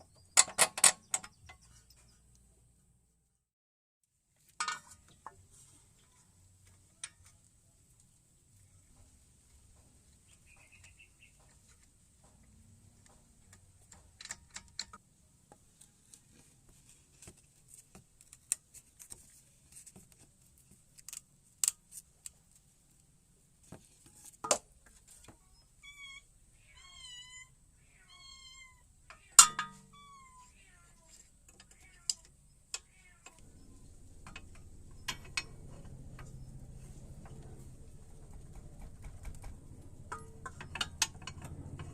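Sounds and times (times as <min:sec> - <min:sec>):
hand tools clinking on metal: 0:04.6 - 0:05.1, 0:29.1 - 0:30.2, 0:31.5 - 0:38.6, 0:39.3 - 0:41.9
low steady hum: 0:25.1 - 0:41.9.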